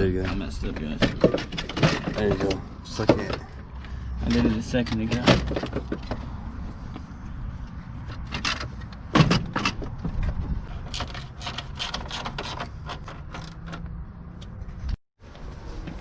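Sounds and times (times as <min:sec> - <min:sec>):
tools clicking and clanking: 0:00.1 - 0:06.3, 0:08.0 - 0:14.6.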